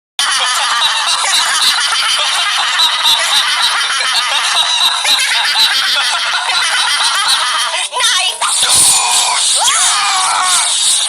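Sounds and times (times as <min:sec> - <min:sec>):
high-pitched cartoon voice laughing: 0:00.2 - 0:11.0.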